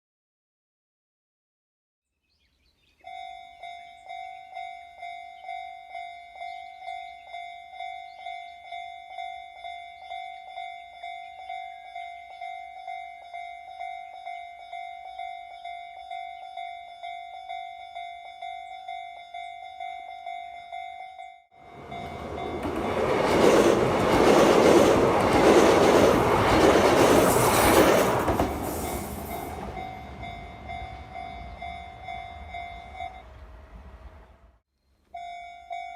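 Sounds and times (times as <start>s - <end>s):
level-crossing warning bell: 3.0s - 24.8s, 28.5s - 33.4s, 35.2s - 35.9s
train passing over crossing: 3.0s - 34.6s.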